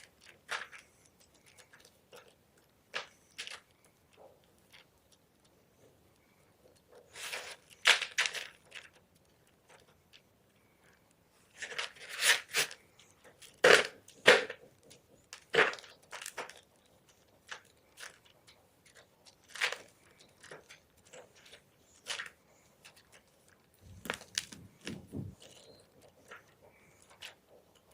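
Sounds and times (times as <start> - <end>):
chalk crunching: 6.7 - 10.2, 11.4 - 27.9.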